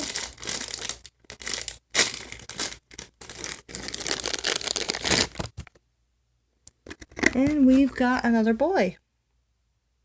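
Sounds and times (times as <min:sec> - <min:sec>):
plastic packaging tearing and crumpling: 0:00.0 - 0:05.8.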